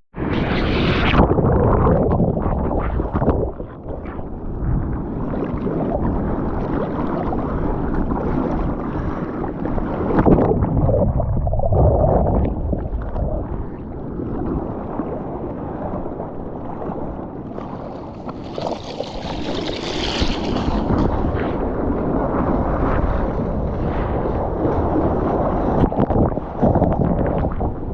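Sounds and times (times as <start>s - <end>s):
wind buffeting microphone: 0.2s - 27.9s
water sloshing and splashing: 1.8s - 21.6s.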